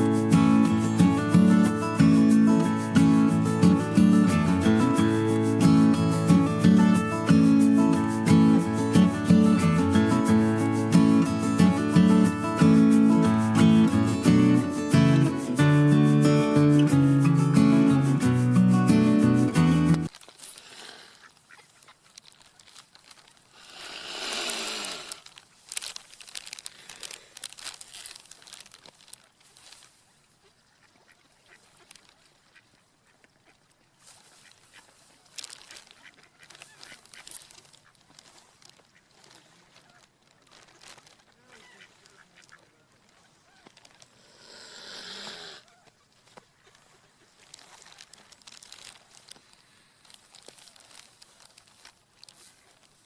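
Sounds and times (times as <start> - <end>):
guitar music: 0.0 - 20.1.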